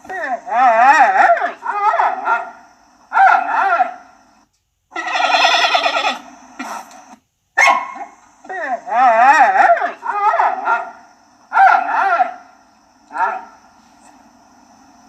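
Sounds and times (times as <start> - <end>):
giant panda bleating: 5.0 - 6.2.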